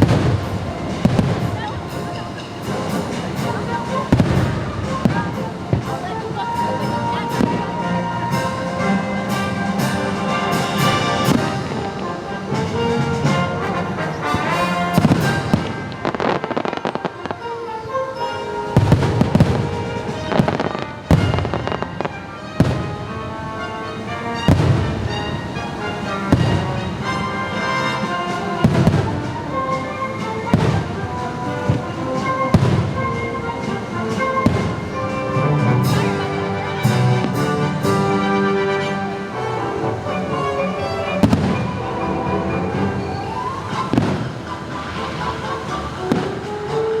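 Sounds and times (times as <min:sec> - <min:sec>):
fireworks bangs: 0:00.0 - 0:17.1, 0:18.7 - 0:47.0
orchestral music: 0:00.0 - 0:47.0.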